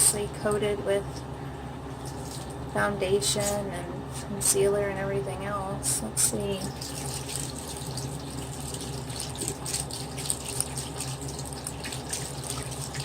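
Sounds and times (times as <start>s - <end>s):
water running from sink tap: 6.6s - 13.0s
sponge splashing: 6.7s - 13.0s.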